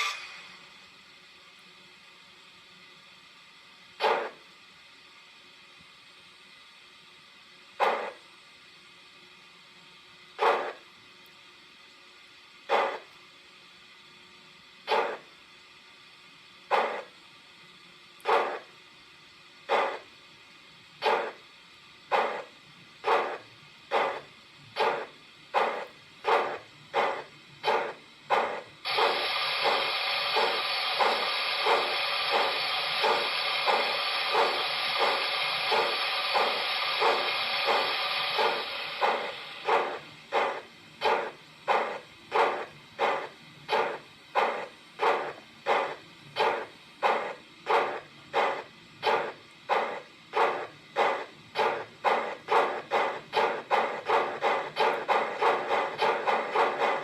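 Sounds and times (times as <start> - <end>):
loud steady steam hiss: 0.0 - 57.0
steam locomotive exhaust chuffs: 0.0 - 57.0.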